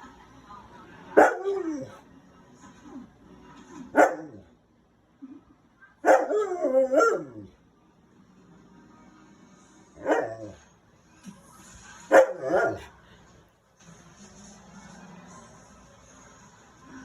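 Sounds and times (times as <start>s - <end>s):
dog barking: 1.2s - 1.7s, 3.9s - 4.5s, 6.0s - 7.4s, 10.0s - 10.6s, 12.1s - 12.9s.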